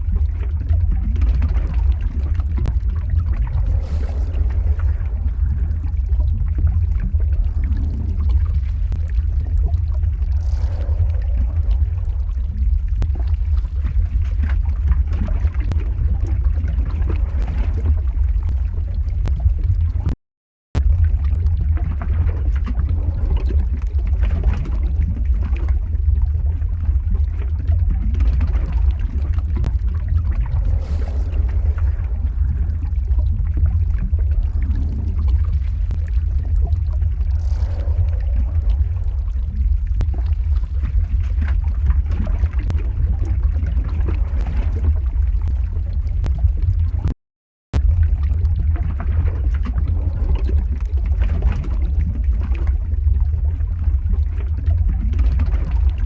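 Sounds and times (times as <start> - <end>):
lava crackling: 0.0 - 20.2, 20.8 - 47.2, 47.8 - 56.0
liquid bubbling: 0.0 - 20.2, 20.8 - 47.2, 47.8 - 56.0
deep steady rumble: 0.0 - 56.0.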